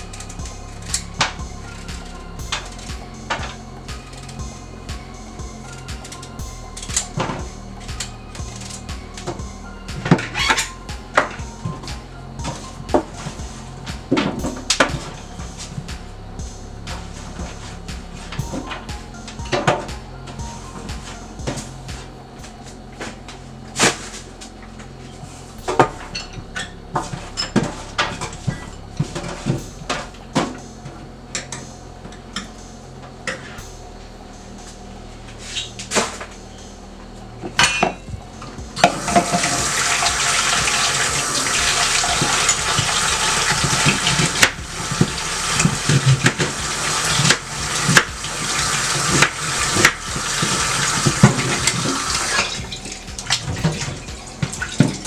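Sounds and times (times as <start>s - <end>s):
tap water running into sink: 38.8s - 52.5s.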